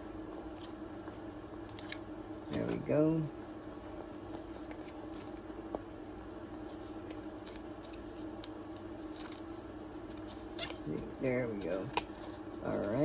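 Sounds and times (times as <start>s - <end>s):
steady hum: 0.0s - 13.0s
packaging being handled and opened: 6.5s - 10.9s.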